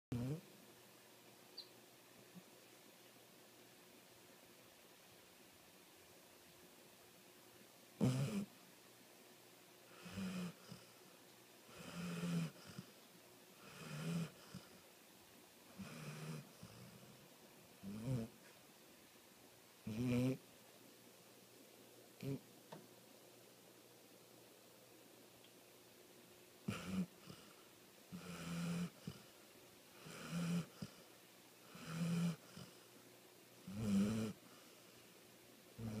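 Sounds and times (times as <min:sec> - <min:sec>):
dog snoring: 0:00.1 - 0:00.4, 0:08.0 - 0:08.5, 0:09.9 - 0:11.0, 0:11.7 - 0:13.0, 0:13.6 - 0:14.8, 0:15.7 - 0:17.2, 0:17.8 - 0:18.4, 0:19.8 - 0:20.4, 0:22.2 - 0:22.4, 0:26.6 - 0:29.3, 0:30.0 - 0:32.9, 0:33.6 - 0:34.9, 0:35.8 - 0:36.0.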